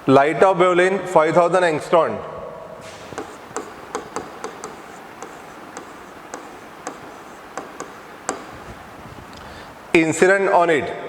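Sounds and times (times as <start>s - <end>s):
pen tapping on writing surface: 2.9s - 8.9s.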